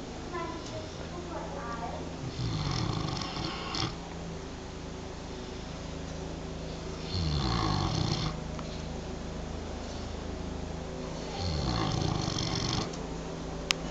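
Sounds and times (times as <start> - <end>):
pig breathing: 2.2 - 4.0, 11.1 - 13.0
pig snoring: 2.2 - 4.1, 7.0 - 8.4, 11.1 - 13.0.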